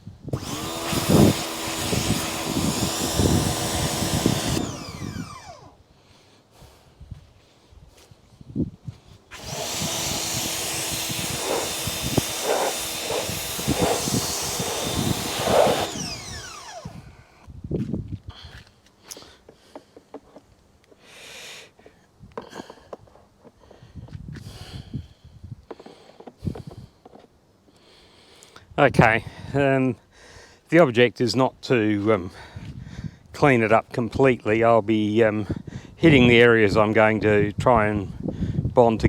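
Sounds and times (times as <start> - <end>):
pressure washer motor whining: 0.4 - 5.8, 9.3 - 17.1.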